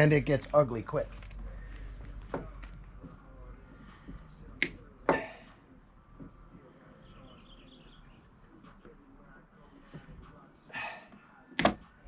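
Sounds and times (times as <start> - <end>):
snips cutting wires: 4.6 - 4.9, 11.6 - 11.9.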